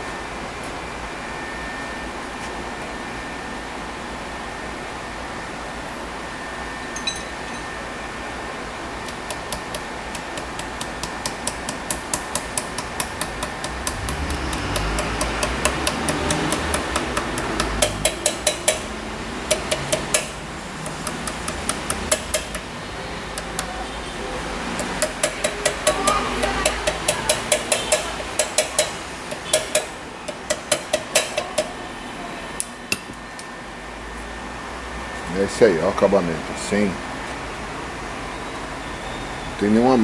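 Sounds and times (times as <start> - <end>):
sharp metallic taps: 9.1 - 22.7, 24.8 - 31.8.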